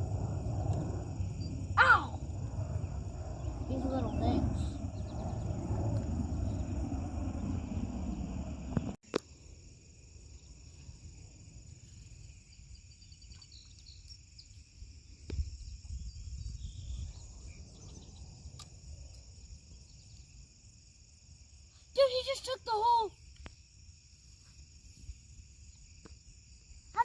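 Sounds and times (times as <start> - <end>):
low outdoor rumble: 0.0 - 9.0
high-pitched insect chorus: 0.0 - 27.0.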